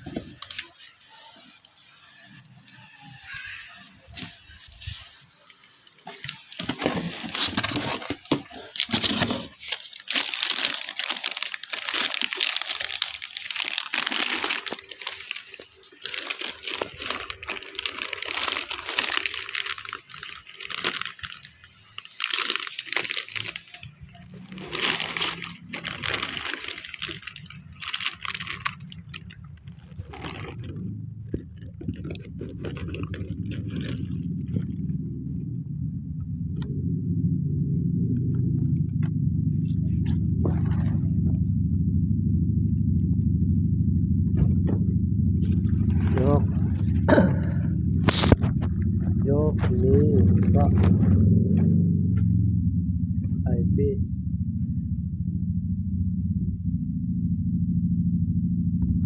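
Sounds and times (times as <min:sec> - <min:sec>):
packaging crinkling and tearing: 0:00.0 - 0:35.4, 0:45.4 - 0:52.0
low rumble: 0:06.1 - 0:59.0.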